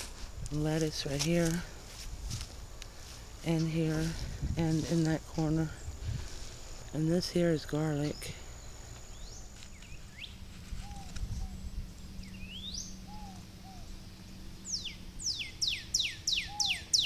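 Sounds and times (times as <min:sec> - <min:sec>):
steady low hum: 0:00.0 - 0:16.6
songbird chirping and whistling: 0:07.6 - 0:14.0, 0:14.6 - 0:17.0.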